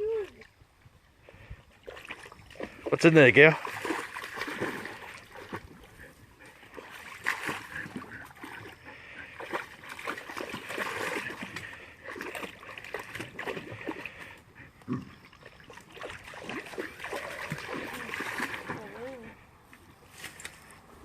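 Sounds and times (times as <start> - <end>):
dog splashing in water: 1.8 - 14.4, 15.1 - 19.3.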